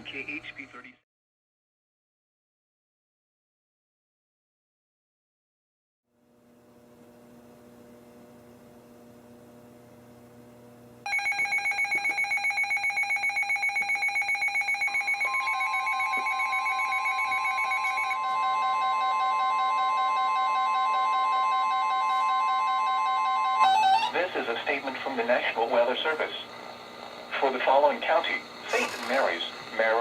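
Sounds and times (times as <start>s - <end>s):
faint hum: 6.2s - 30.0s
rapid electronic alarm beeping: 11.1s - 24.2s
steady alarm tone: 11.1s - 30.0s.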